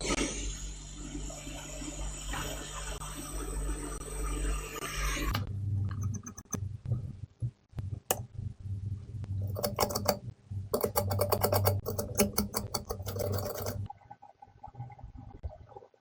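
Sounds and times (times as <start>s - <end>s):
low hum: 5.2s - 15.7s.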